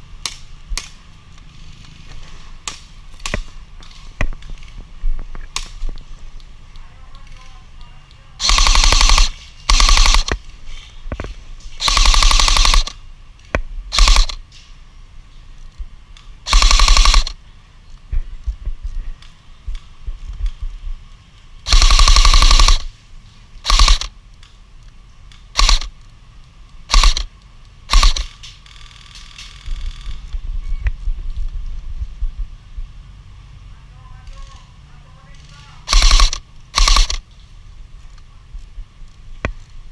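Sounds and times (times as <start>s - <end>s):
airsoft rifle full-auto bursts: 8.4s - 10.4s, 11.8s - 13.0s, 13.9s - 14.4s, 16.5s - 17.4s, 21.7s - 22.9s, 23.6s - 24.1s, 25.5s - 25.9s, 26.9s - 27.3s, 27.9s - 28.3s, 35.8s - 37.2s.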